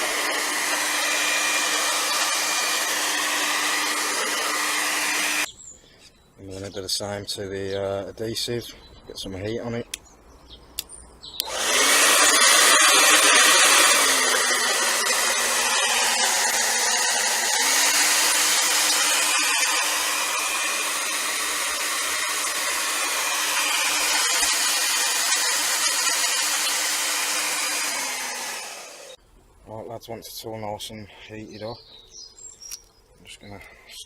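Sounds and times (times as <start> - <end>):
hairdryer running: 0.0 - 5.5, 11.4 - 29.2.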